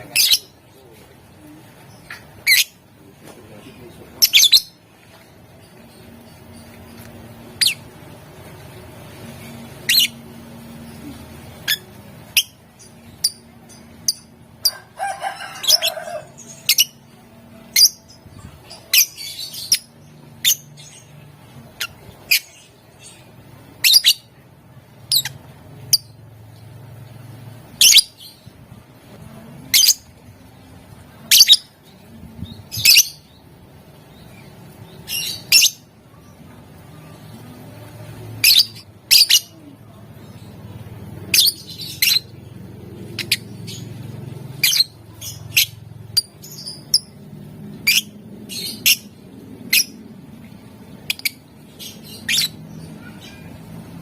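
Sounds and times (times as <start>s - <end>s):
lovebird chirping: 5.6s - 14.8s, 15.6s - 24.3s, 25.0s - 26.2s, 27.7s - 28.5s, 31.2s - 40.6s, 41.2s - 42.4s, 43.0s - 53.6s.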